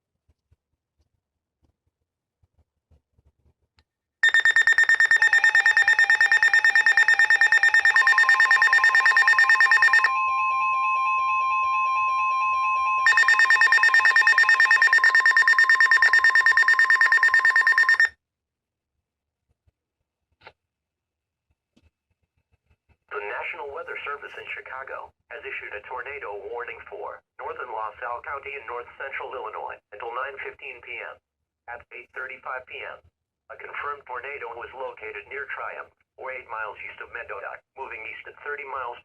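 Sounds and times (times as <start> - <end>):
rapid pulsing electronic beep: 4.2 - 10.1, 13.1 - 18.1
steady single-tone alarm tone: 4.2 - 18.1.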